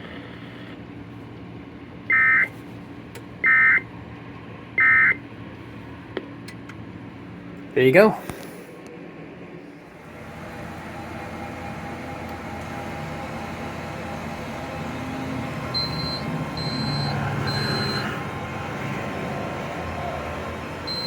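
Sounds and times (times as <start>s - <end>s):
radio static and hum: 0.0s - 0.8s, 2.1s - 2.6s
short high electronic beeps: 15.8s - 18.1s.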